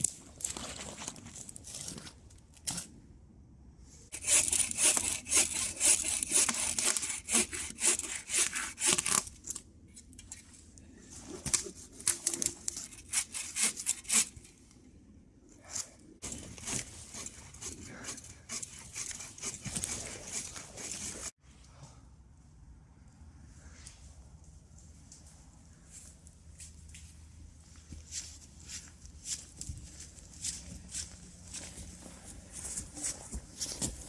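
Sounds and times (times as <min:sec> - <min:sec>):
hand saw cutting wood: 0:04.1 - 0:09.3, 0:12.8 - 0:14.4, 0:16.2 - 0:21.3.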